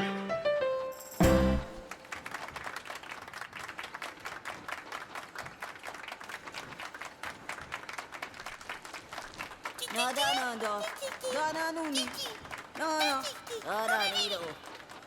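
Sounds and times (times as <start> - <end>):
loud low thud: 1.2 - 1.8
crowd clapping: 1.2 - 15.0.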